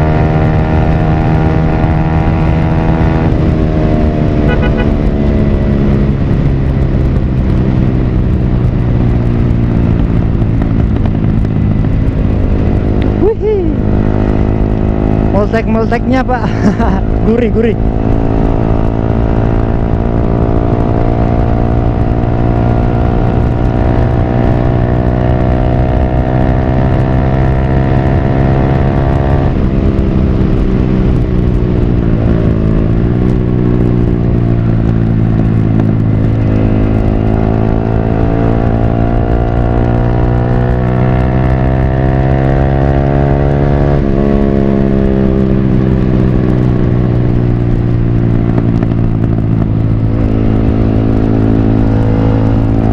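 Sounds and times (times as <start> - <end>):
motorcycle engine exhaust note: 0.0 - 52.9.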